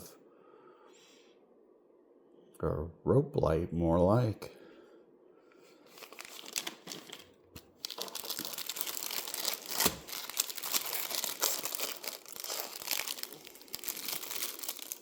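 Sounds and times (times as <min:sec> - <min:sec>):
plastic bags crinkling: 0:05.8 - 0:15.0.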